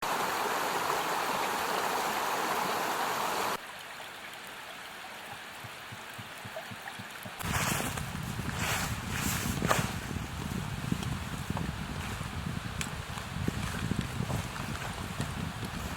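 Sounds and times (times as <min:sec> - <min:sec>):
running water rushing: 0:00.0 - 0:15.9
wind buffeting microphone: 0:07.4 - 0:15.9.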